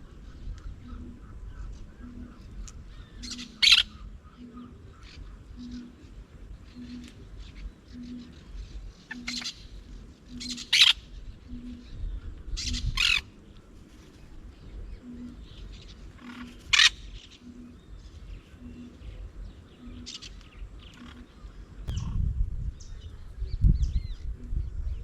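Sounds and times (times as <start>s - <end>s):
soft low repeating note: 0.0s - 13.0s
parrots squawking: 3.2s - 4.0s.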